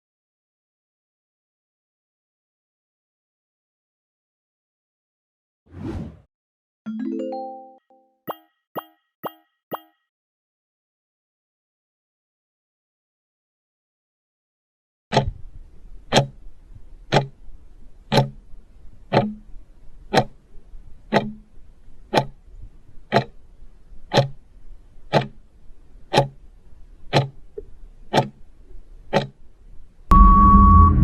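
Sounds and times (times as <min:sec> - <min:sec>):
countdown timer ticking: 0:06.9 - 0:10.0, 0:15.1 - 0:15.3, 0:16.1 - 0:16.4, 0:17.1 - 0:17.4, 0:18.1 - 0:18.4, 0:19.1 - 0:19.5, 0:20.1 - 0:20.4, 0:21.1 - 0:21.5, 0:22.1 - 0:22.4, 0:23.1 - 0:23.4, 0:24.1 - 0:24.4, 0:25.1 - 0:25.4, 0:26.1 - 0:26.4, 0:27.1 - 0:27.4, 0:28.1 - 0:28.4, 0:29.1 - 0:29.3
loud noisy sting with beep: 0:30.1 - 0:31.0.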